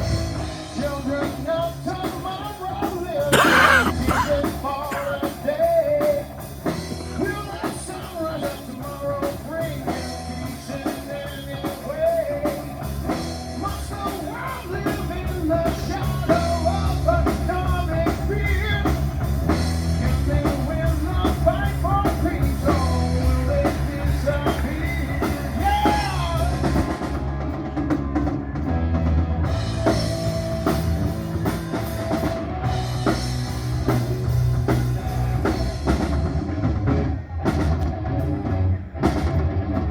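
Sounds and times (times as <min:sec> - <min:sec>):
drum kit beat: 0:01.0 - 0:27.2, 0:29.4 - 0:37.0
person singing: 0:02.8 - 0:06.2
bass line: 0:12.8 - 0:39.9.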